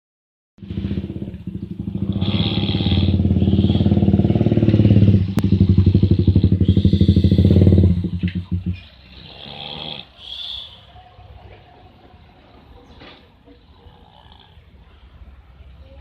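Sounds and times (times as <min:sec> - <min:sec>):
person snoring with rattling flutter: 0:01.8 - 0:05.1, 0:05.8 - 0:10.1, 0:13.8 - 0:14.6.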